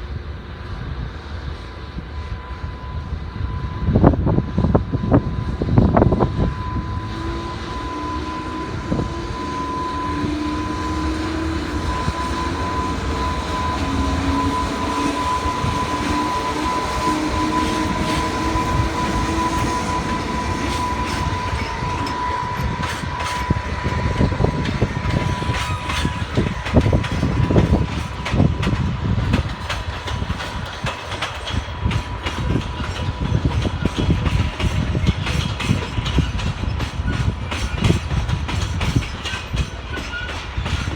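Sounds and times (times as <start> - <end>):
train rumble: 0.0 - 40.9
steady high tone: 2.3 - 28.0
shifting whine: 2.9 - 29.2
wheels clacking over rail joints: 5.5 - 40.9.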